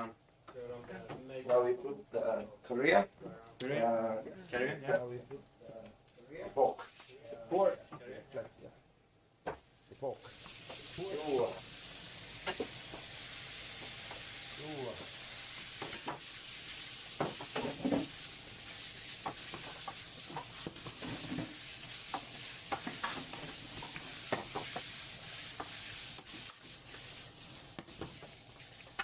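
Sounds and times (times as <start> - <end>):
meat sizzling in a pan: 9.5 - 29.0
utensil scraping a pan: 19.1 - 29.0.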